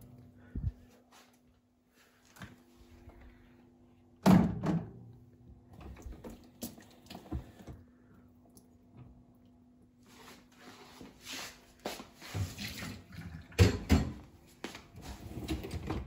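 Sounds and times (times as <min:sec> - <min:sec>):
faint steady hum: 0:00.0 - 0:10.8.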